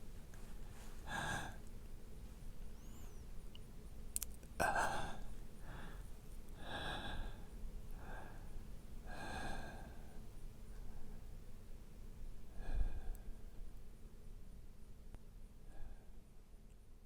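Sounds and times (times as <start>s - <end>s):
man breathing heavily: 0.8s - 1.6s, 4.7s - 8.5s, 9.1s - 10.2s, 12.6s - 13.4s.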